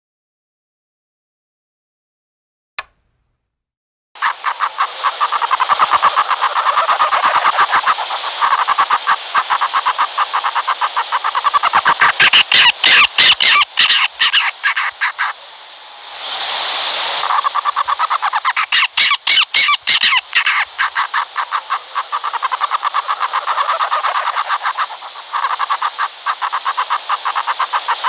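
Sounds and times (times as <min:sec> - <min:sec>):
owl chattering call: 0:04.2 - 0:15.4, 0:17.2 - 0:28.0
owl harsh hiss: 0:04.2 - 0:28.0.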